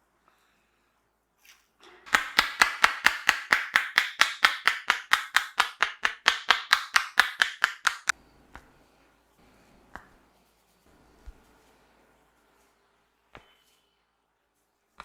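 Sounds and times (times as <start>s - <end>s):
hands slapping head: 2.1s - 8.7s, 9.9s - 10.2s.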